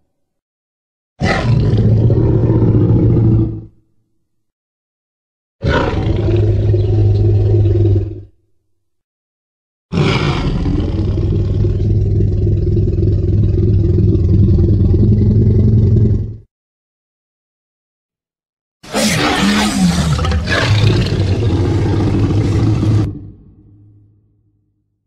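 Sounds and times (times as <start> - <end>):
dinosaur roar: 1.2 - 3.7, 5.6 - 8.4, 9.9 - 16.4, 18.8 - 24.0.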